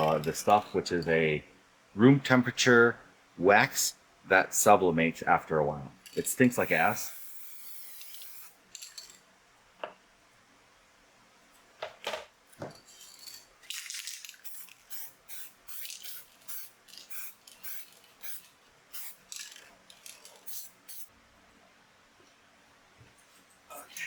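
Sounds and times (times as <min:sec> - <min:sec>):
aerosol spray hisses: 0:06.6 - 0:08.6, 0:14.4 - 0:19.2.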